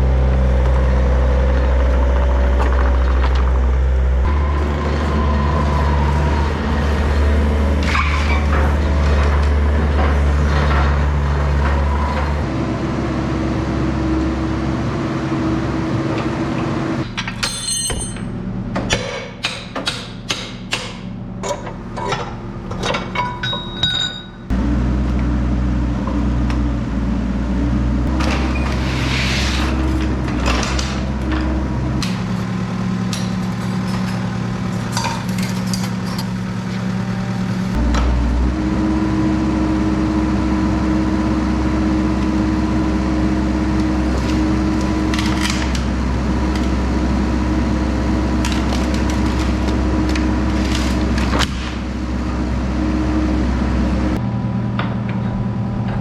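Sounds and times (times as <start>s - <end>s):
excavator diesel engine running: 0.0s - 17.3s, 21.2s - 56.0s
bucket clanking against stones: 33.2s - 36.3s.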